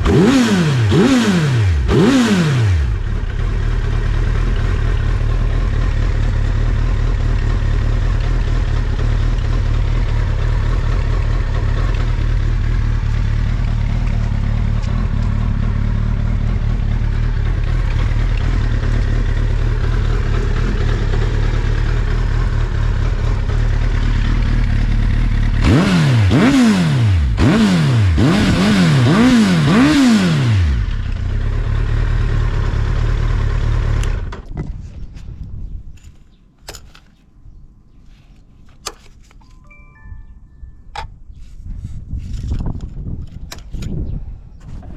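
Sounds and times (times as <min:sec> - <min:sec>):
engine revs: 0:00.0 - 0:34.3
motorcycle engine idling: 0:01.7 - 0:27.5, 0:30.6 - 0:34.3.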